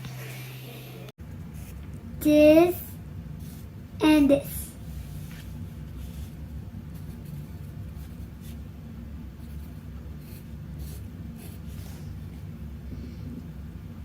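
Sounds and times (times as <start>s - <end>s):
steady low hum: 0.0s - 14.0s
pen scratching on paper: 9.4s - 12.4s.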